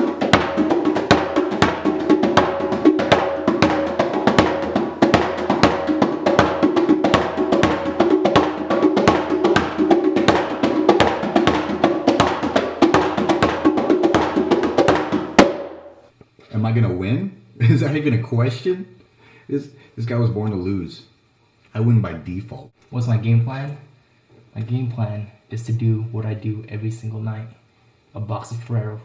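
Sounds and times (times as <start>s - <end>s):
background music: 0.0s - 16.1s.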